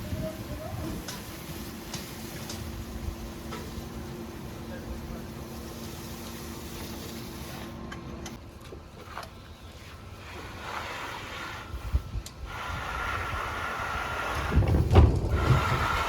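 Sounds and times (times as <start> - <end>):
knocks and scraping: 14.2 - 16.0.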